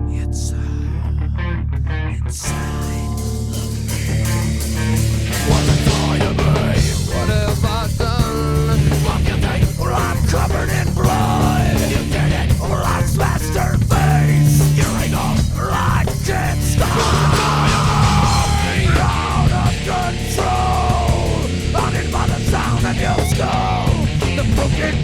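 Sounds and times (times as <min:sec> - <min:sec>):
bass: 0:00.0 - 0:25.0
distorted electric guitars: 0:00.0 - 0:25.0
drums: 0:02.4 - 0:25.0.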